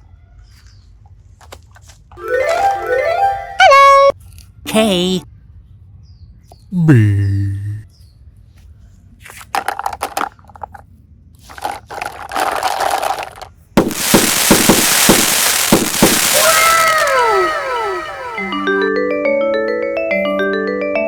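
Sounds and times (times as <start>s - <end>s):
cartoon crackling: 13.8s - 18.8s
loud hiss with sharp pops: 13.8s - 18.8s
falling whistle tones: 15.3s - 18.9s.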